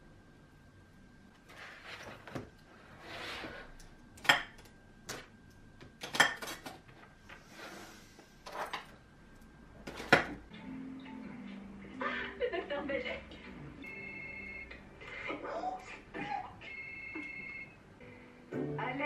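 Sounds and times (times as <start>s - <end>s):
soft scraping and rustling: 1.4s - 3.8s
dishes and cutlery clinking: 6.0s - 6.7s.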